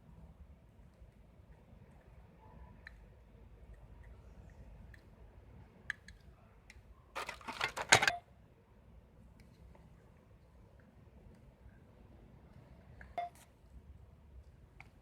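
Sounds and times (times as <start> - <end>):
small hard objects clattering: 7.2 - 8.2.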